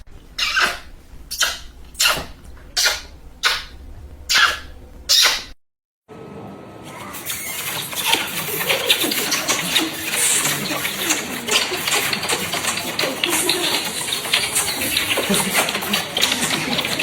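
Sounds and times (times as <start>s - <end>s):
wet kissing lip smacks: 0.4s - 3.7s
breathy murmurs: 6.9s - 17.0s.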